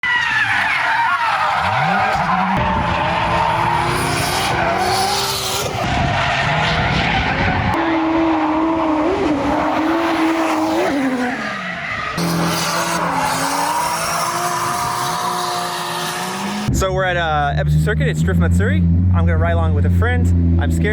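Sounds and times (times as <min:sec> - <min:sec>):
tyres screeching: 0:00.0 - 0:16.7
car engines revving: 0:00.0 - 0:20.9.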